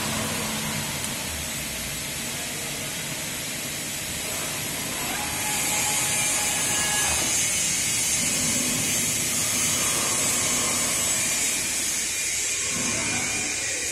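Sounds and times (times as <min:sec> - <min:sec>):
mortising machine cutting wood: 0:04.2 - 0:13.9.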